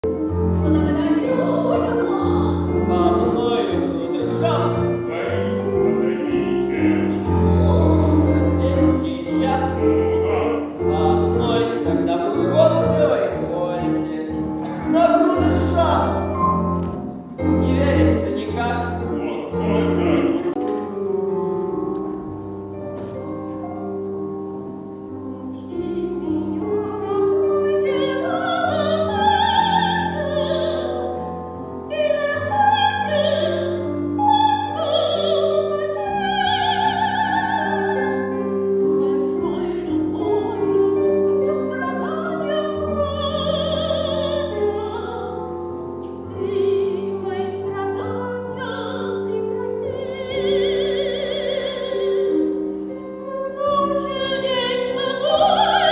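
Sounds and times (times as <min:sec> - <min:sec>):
instrumental chords: 0:00.0 - 0:55.9
person singing operatically: 0:00.8 - 0:16.3, 0:17.4 - 0:20.6.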